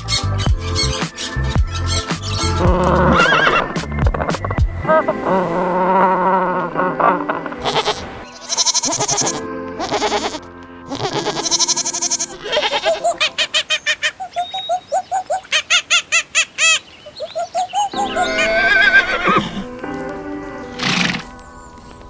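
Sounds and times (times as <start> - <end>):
goats bleating: 6.0 - 14.0.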